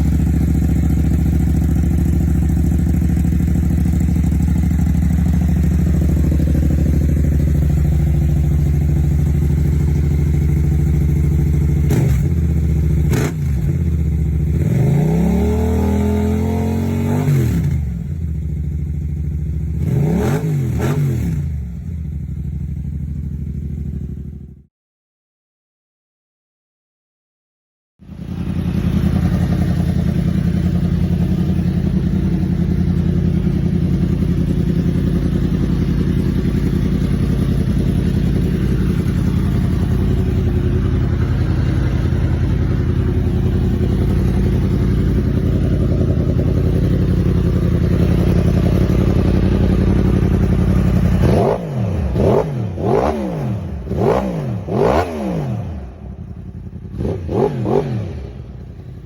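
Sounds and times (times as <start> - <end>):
motorcycle idling: 0.0 - 24.7, 28.0 - 59.0
motorcycle throttle blips: 28.2 - 59.0.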